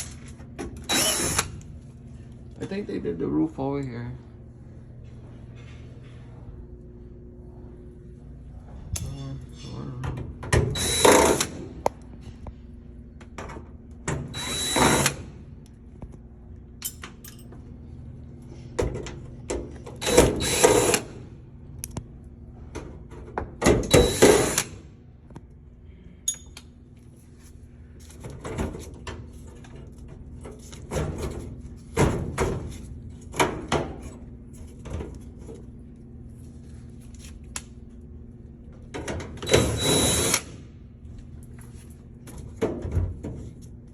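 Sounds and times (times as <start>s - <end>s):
power drill whining: 0.9s - 1.6s, 10.8s - 11.6s, 14.4s - 15.2s, 20.0s - 21.1s, 23.9s - 24.7s, 39.4s - 40.5s.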